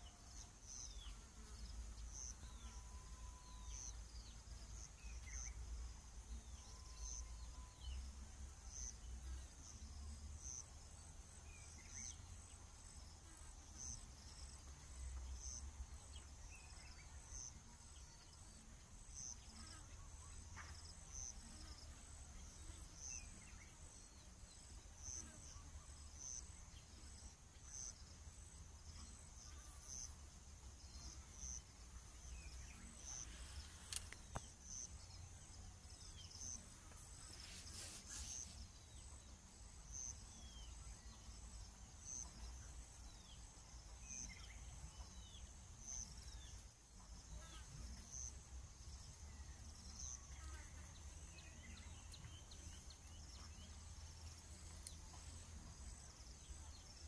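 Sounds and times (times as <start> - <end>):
insect chirping: 0.0 - 57.0.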